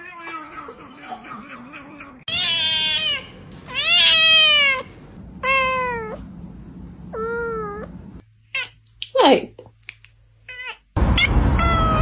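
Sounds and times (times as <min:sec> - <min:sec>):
cat meowing: 0:00.0 - 0:06.2.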